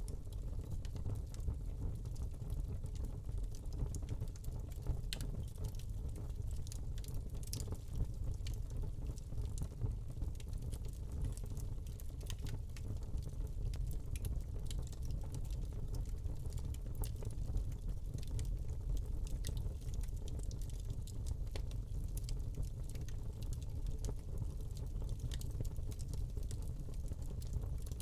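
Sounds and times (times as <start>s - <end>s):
low rumble of flames: 0.0s - 28.0s
wood fire crackling and popping: 0.0s - 28.0s.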